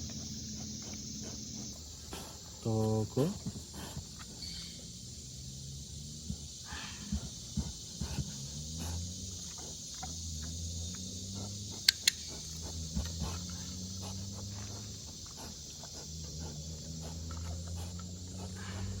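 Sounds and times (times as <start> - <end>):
insects chirring: 0.0 - 19.0
training clicker clicking: 11.8 - 12.3.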